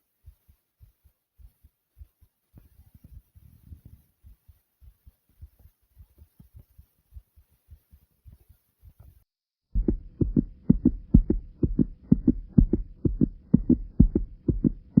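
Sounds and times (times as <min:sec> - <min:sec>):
heart beating fast: 0:04.2 - 0:09.1, 0:09.7 - 0:15.0.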